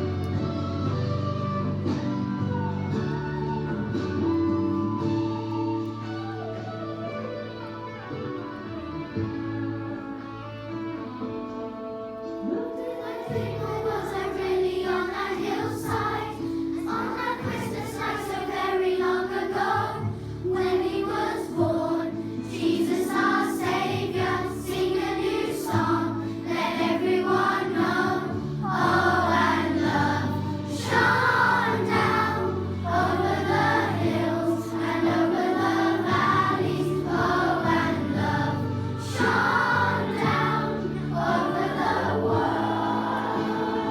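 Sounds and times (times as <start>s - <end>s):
children's choir singing: 12.5s - 43.9s.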